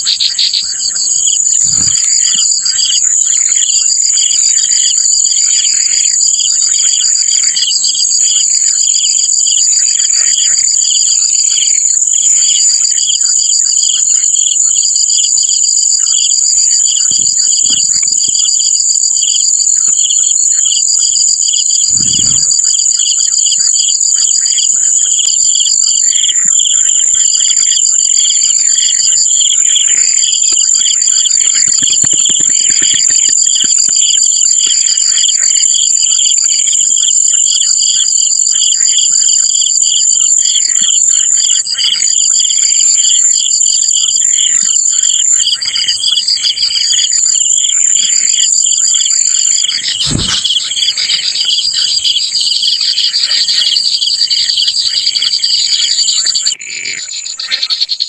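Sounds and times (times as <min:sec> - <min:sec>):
insects trilling: 0:00.0 - 0:58.0
low thump: 0:50.0 - 0:50.8.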